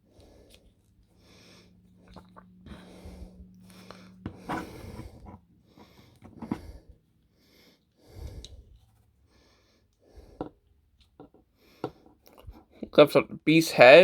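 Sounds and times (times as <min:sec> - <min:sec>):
breathing close to microphone: 0:00.0 - 0:10.6
plastic parts rubbing: 0:04.3 - 0:06.8.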